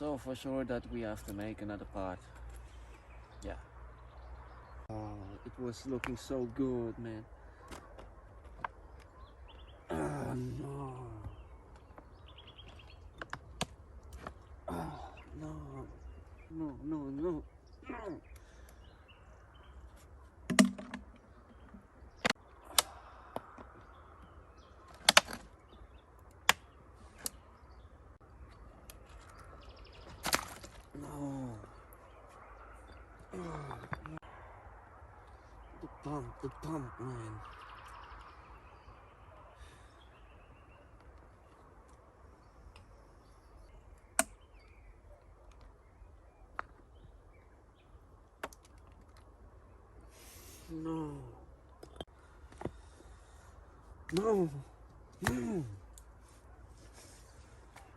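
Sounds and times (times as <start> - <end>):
faint bird chirps: 0.0 - 13.3
sharp knocks: 20.5 - 21.2.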